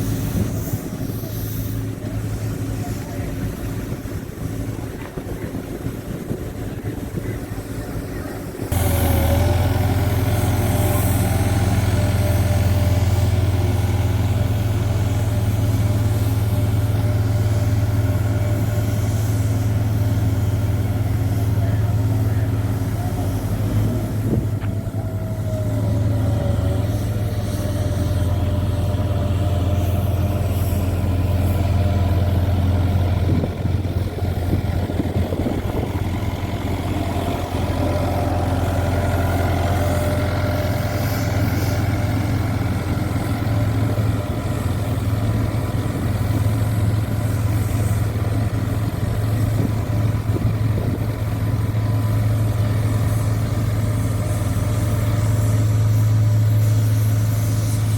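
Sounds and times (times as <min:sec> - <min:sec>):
road roller engine droning: 0:00.0 - 0:57.9.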